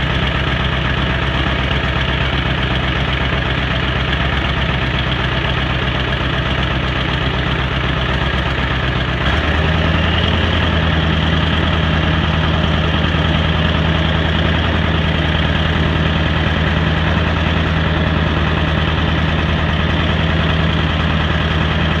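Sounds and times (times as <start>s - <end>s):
diesel engine idling: 0.0s - 22.0s.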